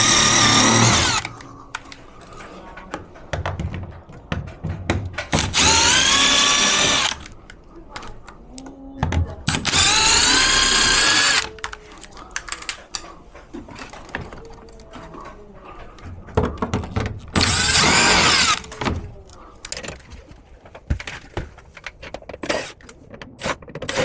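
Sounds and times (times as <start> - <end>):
electric drill-driver running: 0.0 - 2.4, 5.3 - 7.4, 9.5 - 11.8, 12.4 - 13.0, 17.4 - 18.9
clicks and knocks of parts: 0.0 - 24.0.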